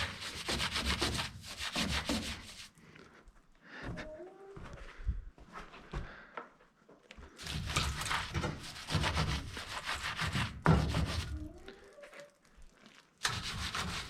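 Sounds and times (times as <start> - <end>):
rough rubbing scrubbing: 0.0 - 2.8, 7.4 - 14.0.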